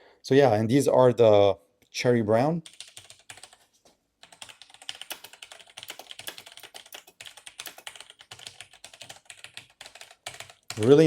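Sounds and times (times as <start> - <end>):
fast typing on mechanical keyboard: 2.6 - 3.6, 4.2 - 11.0.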